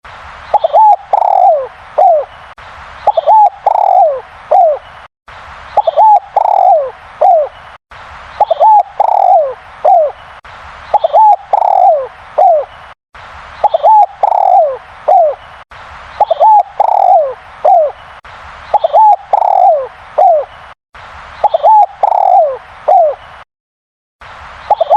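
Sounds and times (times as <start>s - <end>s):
dove cooing: 0.5s - 2.3s, 3.1s - 4.8s, 5.8s - 7.5s, 8.4s - 10.2s, 10.9s - 12.7s, 13.6s - 15.4s, 16.2s - 18.0s, 18.7s - 20.5s, 21.4s - 23.2s.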